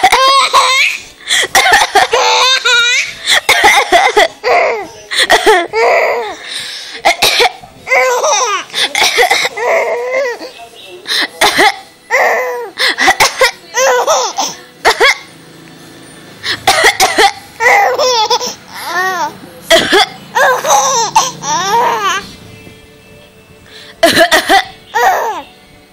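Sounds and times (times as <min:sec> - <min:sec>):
baby coughing: 0:00.0 - 0:02.6, 0:03.3 - 0:06.4, 0:07.0 - 0:10.4, 0:11.4 - 0:15.3, 0:16.5 - 0:22.2, 0:24.0 - 0:25.5
baby giggling: 0:00.0 - 0:06.2, 0:07.9 - 0:10.4, 0:12.1 - 0:15.3, 0:16.9 - 0:22.2, 0:24.0 - 0:25.4.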